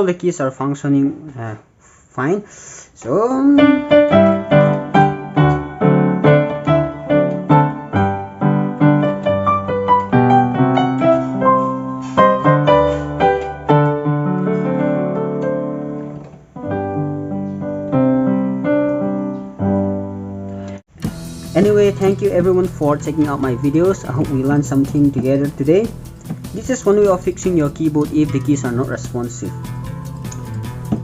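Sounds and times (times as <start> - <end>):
keyboard piano melody and chords: 3.6 - 31.0.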